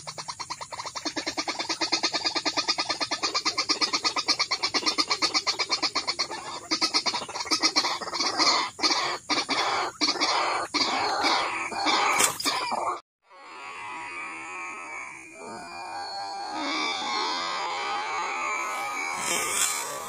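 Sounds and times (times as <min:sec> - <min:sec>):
waterhen calling: 0:00.0 - 0:13.0.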